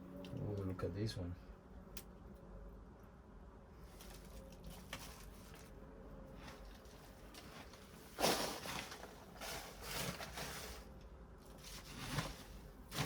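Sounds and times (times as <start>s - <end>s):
hands digging through soil: 6.5s - 11.0s.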